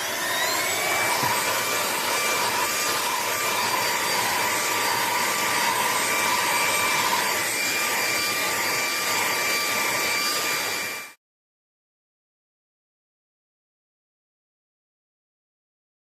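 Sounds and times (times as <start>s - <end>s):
stick vacuum running: 0.0s - 11.1s.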